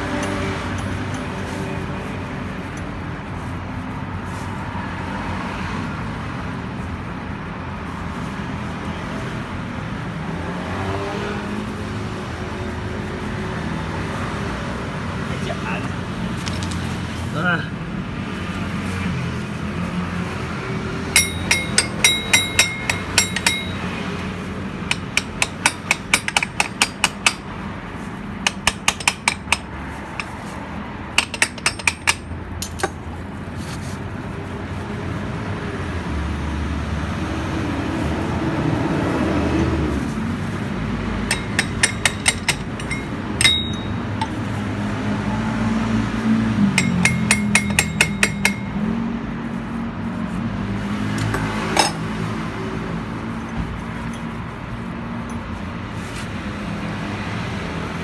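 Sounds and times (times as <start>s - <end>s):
hand tools clicking on metal: 0.0s - 1.7s, 21.1s - 33.3s, 41.2s - 44.7s, 46.6s - 49.0s, 51.1s - 52.3s, 53.3s - 55.7s.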